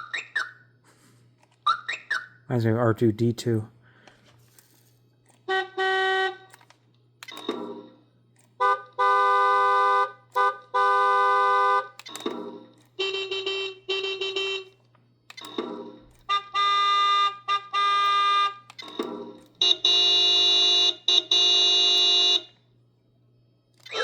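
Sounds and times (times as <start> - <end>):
horn blasts through small speaker: 5.4 - 6.5, 8.6 - 12.0, 13.0 - 14.8.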